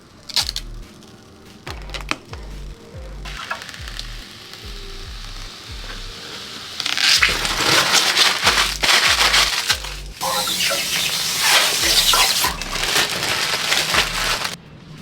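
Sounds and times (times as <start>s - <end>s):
hip-hop beat with deep bass: 1.7s - 3.4s
loud crackling rustle: 3.3s - 14.6s.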